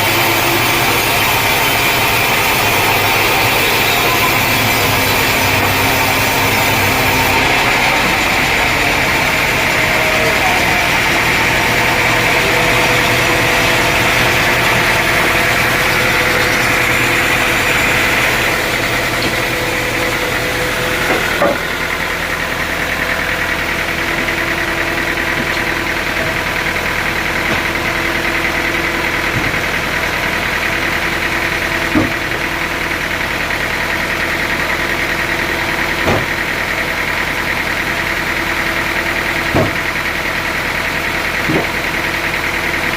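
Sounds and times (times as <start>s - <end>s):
sawmill engine running: 0.0s - 42.9s
sharp knocks: 39.5s - 39.8s.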